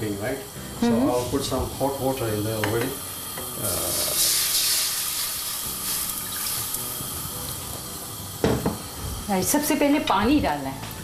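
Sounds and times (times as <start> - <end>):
hot water pouring into pan: 0.0 - 10.7.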